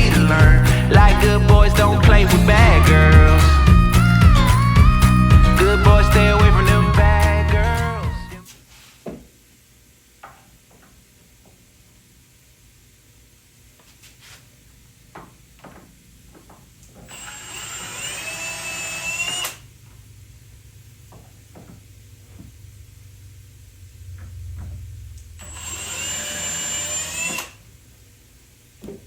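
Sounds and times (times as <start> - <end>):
power drill whine: 17.1 - 19.7, 25.4 - 27.7.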